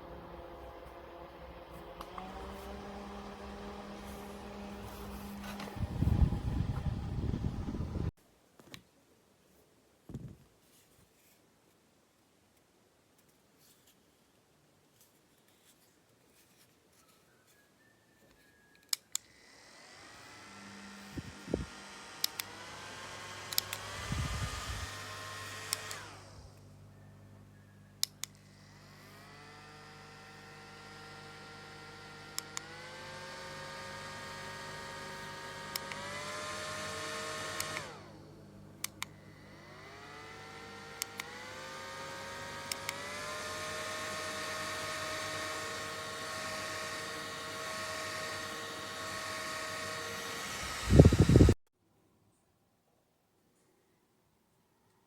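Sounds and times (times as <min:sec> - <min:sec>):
desk fan motor whirring: 0:00.0 - 0:08.1, 0:19.2 - 0:51.6
fan button clicks: 0:23.4 - 0:24.0, 0:35.6 - 0:37.9.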